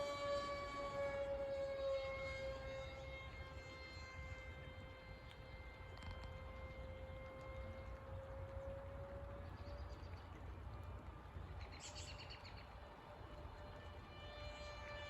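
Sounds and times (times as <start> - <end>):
distant model airplane engine whine: 0.0 - 15.0
bird chirp: 11.6 - 12.8.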